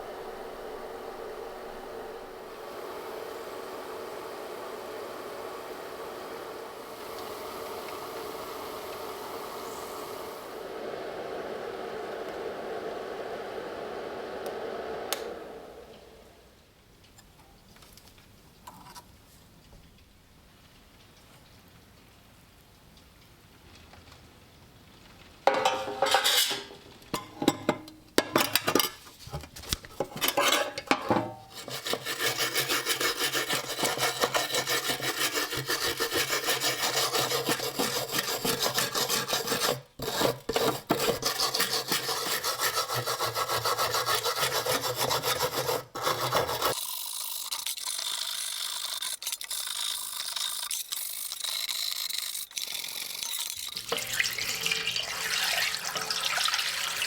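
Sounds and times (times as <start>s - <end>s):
abrasive rubbing on steel knife: 25.6s - 26.8s, 30.1s - 46.8s.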